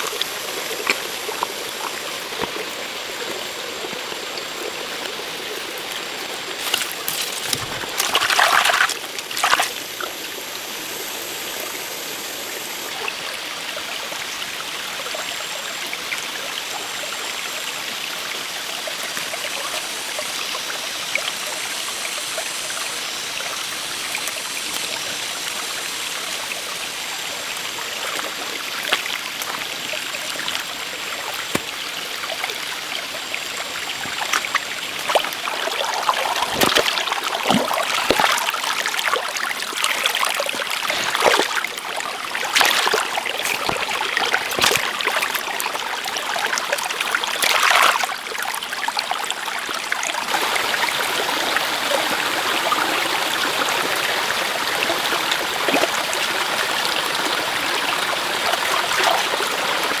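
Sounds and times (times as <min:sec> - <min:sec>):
running water: 0:00.0 - 1:00.0
sharp knocks and scrapes: 0:06.6 - 0:09.8.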